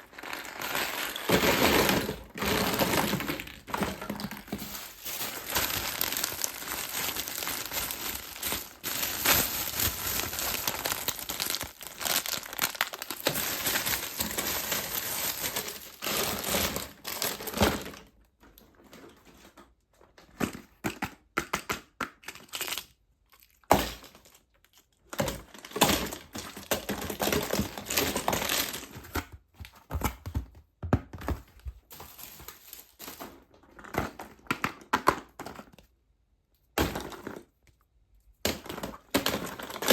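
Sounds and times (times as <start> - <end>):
wrappers crinkling and tearing: 0.0 - 18.0, 39.2 - 39.9.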